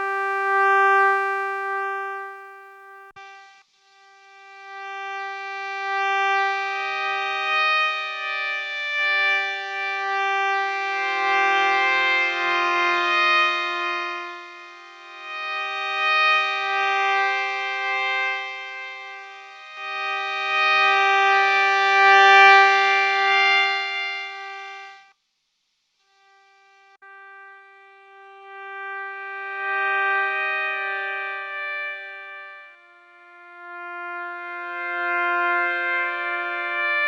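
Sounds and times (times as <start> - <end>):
synthesizer sustained notes: 0.0 - 2.8.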